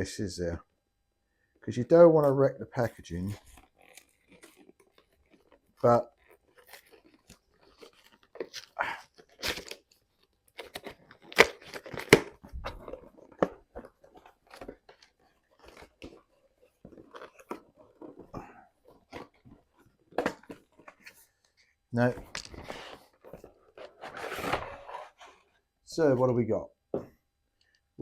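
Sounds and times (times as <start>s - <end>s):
packaging crackling and tearing: 3.4s - 18.2s.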